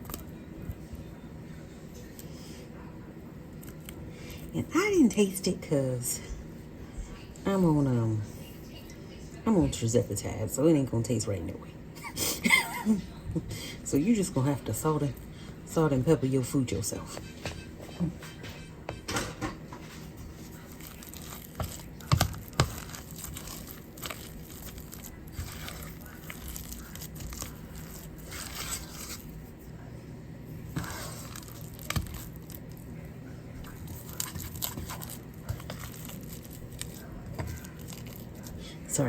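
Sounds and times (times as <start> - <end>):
faint steady hum: 0.0 - 39.0
utensils scraping a pot: 16.9 - 29.6.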